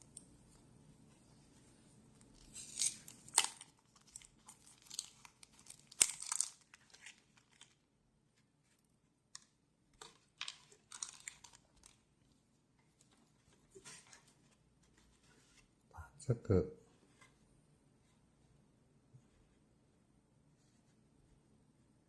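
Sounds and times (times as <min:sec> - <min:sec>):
packaging crinkling and tearing: 0:02.3 - 0:07.8, 0:10.0 - 0:12.1.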